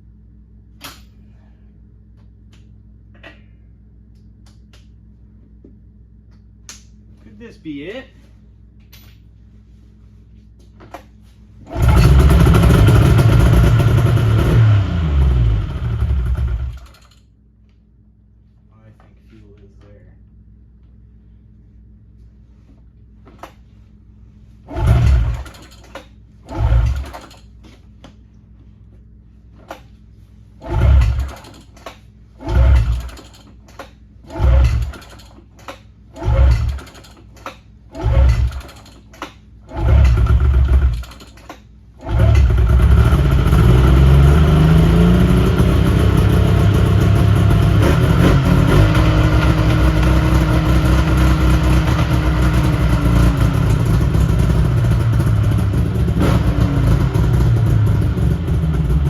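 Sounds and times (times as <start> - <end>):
snowmobile engine cranking: 11.7 - 17.1, 24.7 - 27.5, 30.6 - 31.8, 32.4 - 33.4, 34.2 - 35.4, 36.1 - 39.1, 39.7 - 59.0.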